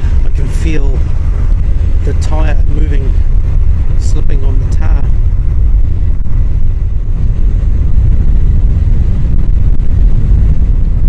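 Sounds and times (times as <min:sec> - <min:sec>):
wind rumble on microphone: 0:00.0 - 0:11.0.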